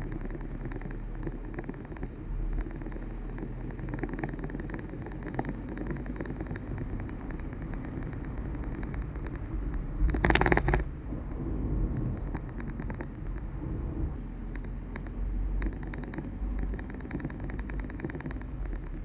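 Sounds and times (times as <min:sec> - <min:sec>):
vehicle road rumble: 0:00.0 - 0:19.0
wind on microphone: 0:07.0 - 0:14.2.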